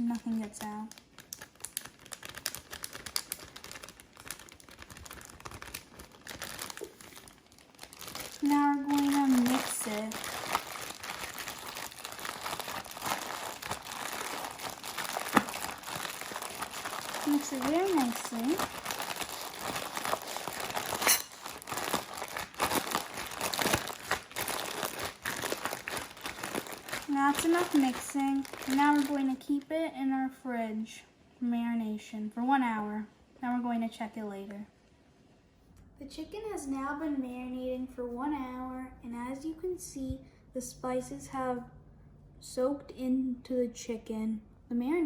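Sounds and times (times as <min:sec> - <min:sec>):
plastic bag crinkling: 0:00.0 - 0:29.6.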